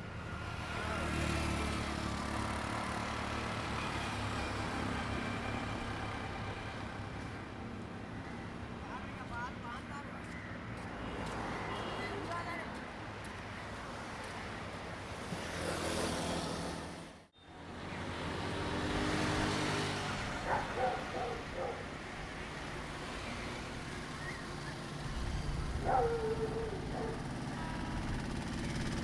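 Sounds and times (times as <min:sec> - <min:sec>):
diesel train engine drone: 0:20.0 - 0:29.0.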